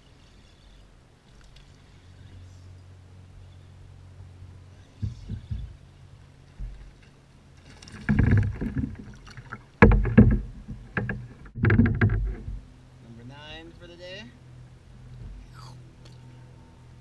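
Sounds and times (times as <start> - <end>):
knocks and thumps against kayak: 4.9 - 5.9, 6.5 - 12.7.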